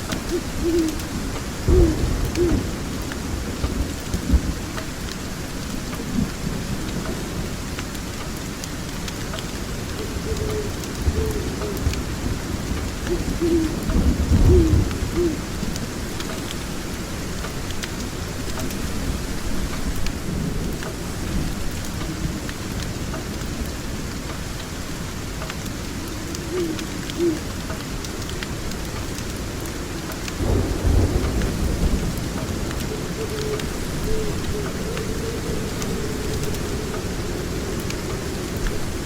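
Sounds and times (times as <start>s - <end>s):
steady rainfall: 0.0s - 39.0s
rolling thunder: 30.4s - 39.0s.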